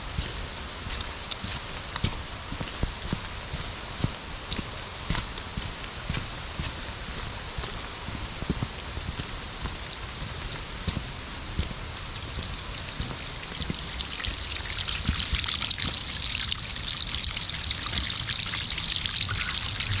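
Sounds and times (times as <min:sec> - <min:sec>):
small water splashes: 0:09.8 - 0:20.0
water trickling: 0:09.8 - 0:20.0.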